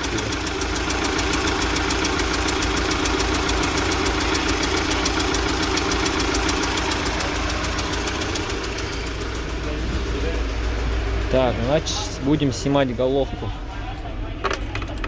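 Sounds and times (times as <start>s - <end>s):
engine idling with fast knocking: 0.0s - 15.0s.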